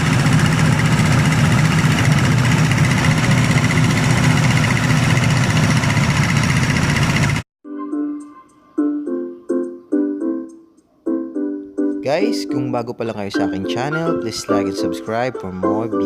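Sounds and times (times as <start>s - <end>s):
engine running steadily: 0.0s - 7.4s.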